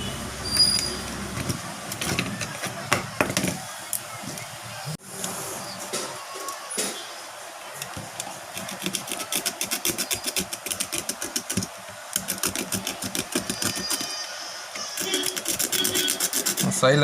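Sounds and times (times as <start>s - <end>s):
hand tool scraping adhesive: 8.5s - 14.2s, 14.8s - 16.8s.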